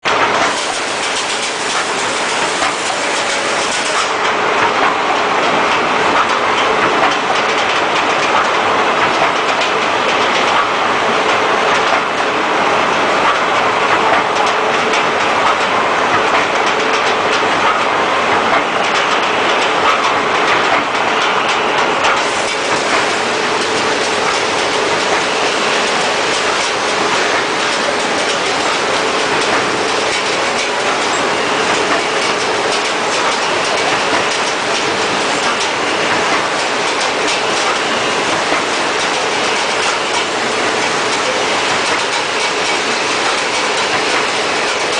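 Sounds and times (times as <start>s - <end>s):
packaging machine clattering: 0.2s - 4.1s.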